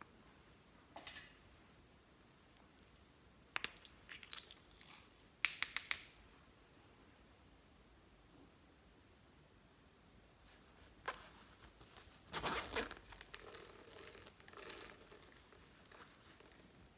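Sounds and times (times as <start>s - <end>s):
small hard objects clicking: 3.6s - 6.2s, 13.1s - 16.9s.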